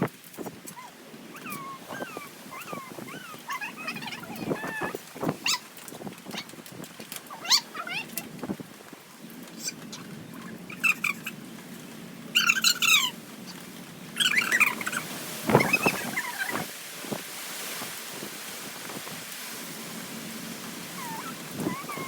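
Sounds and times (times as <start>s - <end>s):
animal calls: 0.7s - 6.5s, 7.3s - 8.4s, 9.5s - 11.5s, 12.3s - 16.7s, 20.9s - 22.0s.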